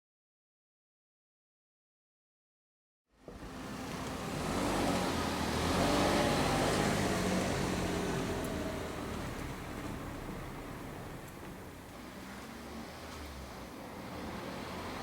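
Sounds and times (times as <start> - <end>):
car engine running: 3.3 - 12.4.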